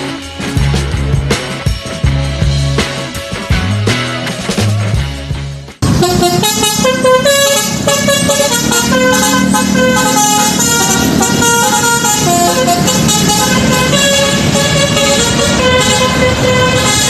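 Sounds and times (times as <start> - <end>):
low engine rumble: 5.8 - 17.0
multi-tone horn melody: 5.8 - 17.0.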